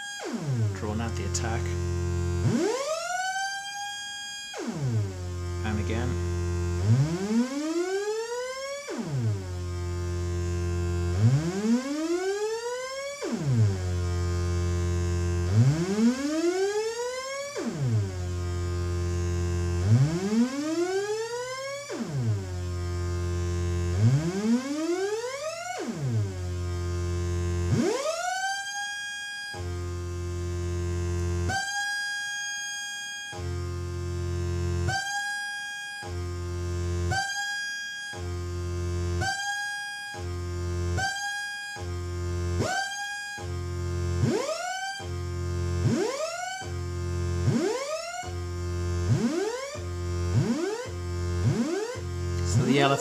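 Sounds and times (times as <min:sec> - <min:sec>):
buzzy synthesizer tone sweeping upward: 0:00.4 - 0:08.5, 0:13.6 - 0:31.7, 0:42.0 - 0:53.0.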